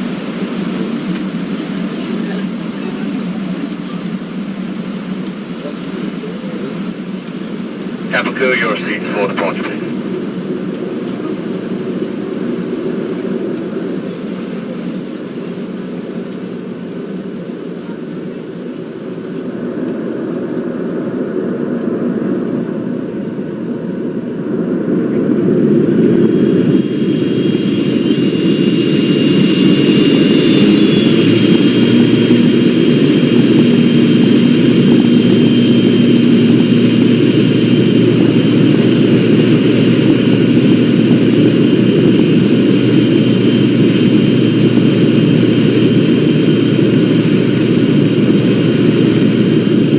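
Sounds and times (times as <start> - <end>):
high engine whine: 0.0 - 49.9
jet engines rumbling: 0.0 - 49.9.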